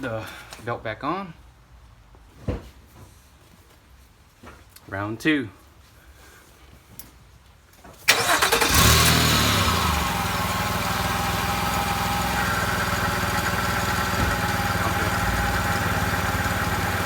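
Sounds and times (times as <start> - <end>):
car engine starting and idling: 8.1 - 17.0.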